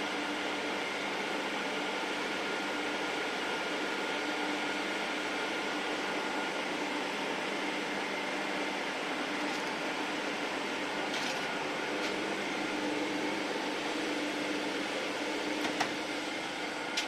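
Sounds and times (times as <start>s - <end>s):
machine humming and whining: 0.0s - 17.0s.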